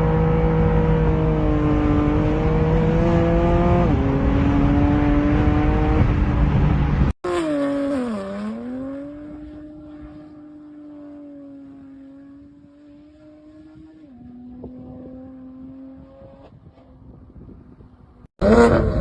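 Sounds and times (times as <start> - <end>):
second car engine: 0.0 - 19.0.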